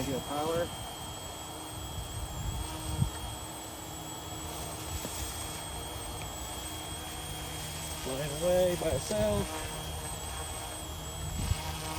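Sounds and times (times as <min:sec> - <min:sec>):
toy helicopter motor whining: 0:00.0 - 0:11.9
wind rumble on microphone: 0:00.5 - 0:03.5, 0:08.4 - 0:11.9.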